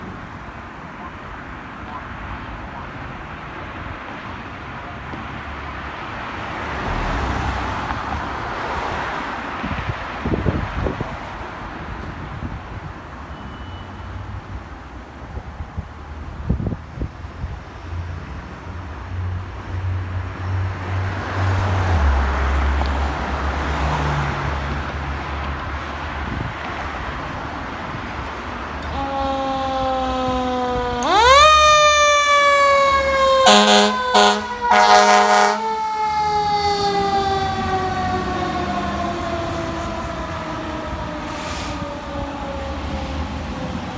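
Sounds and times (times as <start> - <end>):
road and tyre noise: 0.0 - 43.9
street traffic rushing: 0.0 - 43.9
approaching vehicle rumble: 5.0 - 12.8, 15.3 - 43.9
fire engine running: 27.1 - 43.9.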